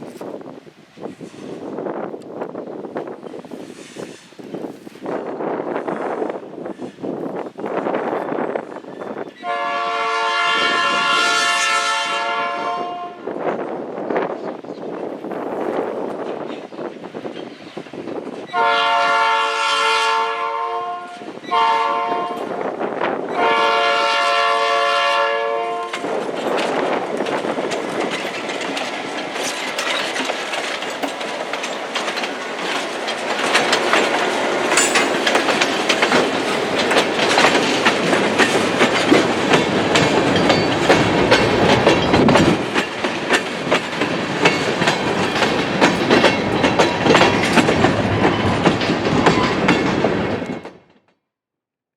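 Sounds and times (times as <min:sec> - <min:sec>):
locomotive air horn blasts: 0:09.4 - 0:13.2, 0:18.5 - 0:22.6, 0:23.4 - 0:26.1
train wheels clicking over rail joints: 0:25.9 - 0:51.0.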